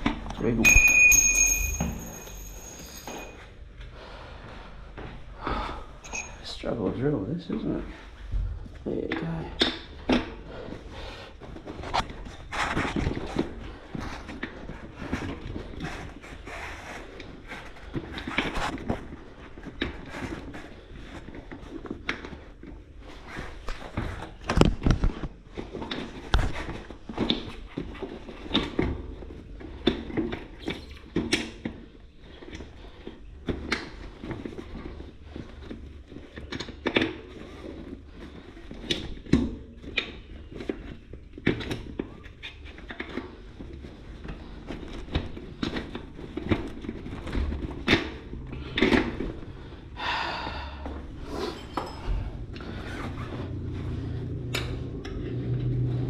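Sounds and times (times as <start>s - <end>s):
objects knocking and thunking: 0.0s - 3.5s, 50.8s - 56.0s.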